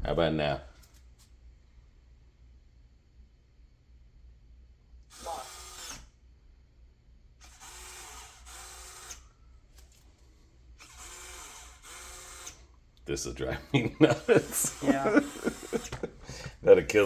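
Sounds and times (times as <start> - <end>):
lock motor whirring: 5.1 - 6.1.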